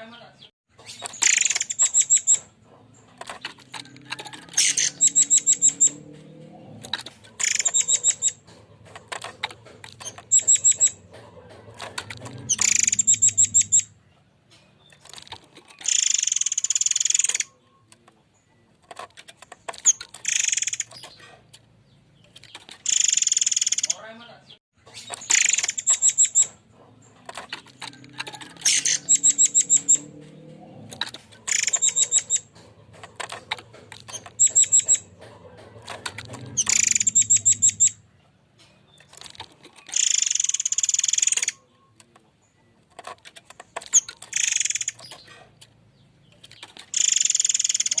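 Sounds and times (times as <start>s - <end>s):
bird harsh rapid-fire call: 22.8s - 24.1s, 31.5s - 32.5s, 39.9s - 41.6s, 44.3s - 45.2s.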